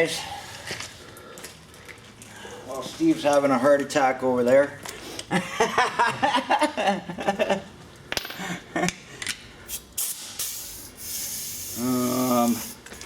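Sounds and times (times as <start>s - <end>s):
man laughing: 5.3s - 7.7s.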